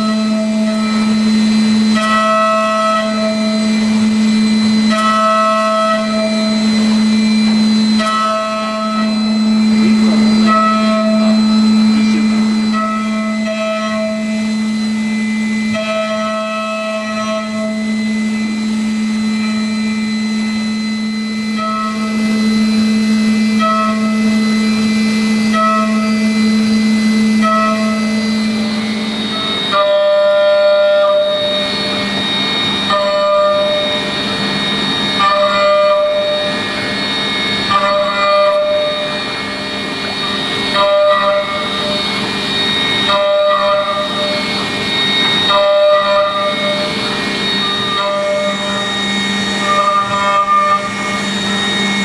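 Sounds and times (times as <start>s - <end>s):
milling machine spindle whine: 0.0s - 52.0s.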